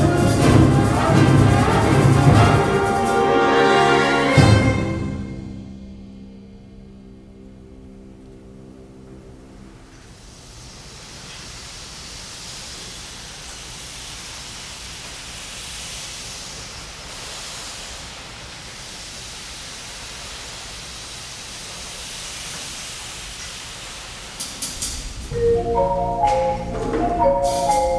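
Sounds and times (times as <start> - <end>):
wind band music: 0.0 - 10.0, 24.8 - 27.9.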